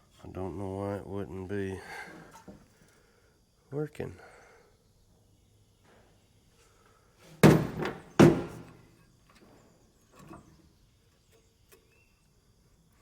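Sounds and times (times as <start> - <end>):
heavy metal clunks: 7.4 - 8.8.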